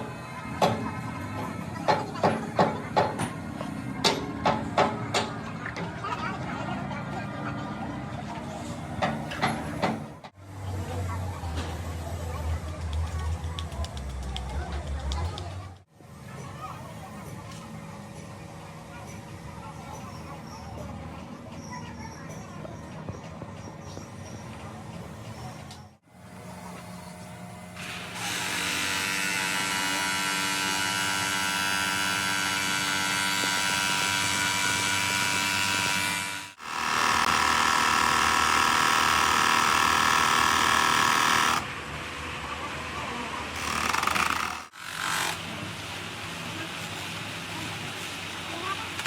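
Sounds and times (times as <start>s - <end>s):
workshop machinery whining hum: 15.6s - 49.0s.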